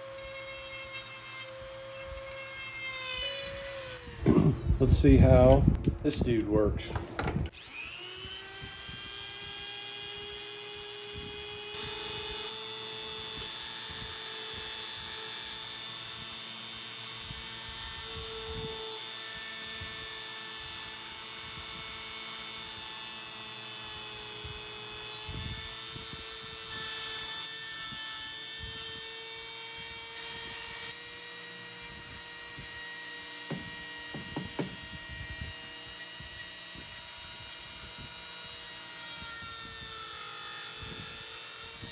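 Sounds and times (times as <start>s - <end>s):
rotary tool motor whining: 0.0s - 5.7s, 6.8s - 41.9s
scuffing knocks: 33.5s - 34.8s.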